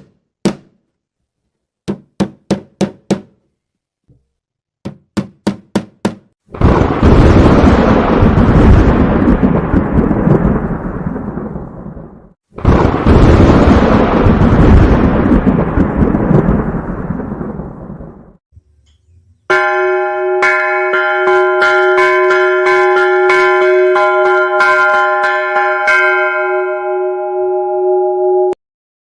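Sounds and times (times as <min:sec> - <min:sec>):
thunder rumbling: 0:06.5 - 0:18.4.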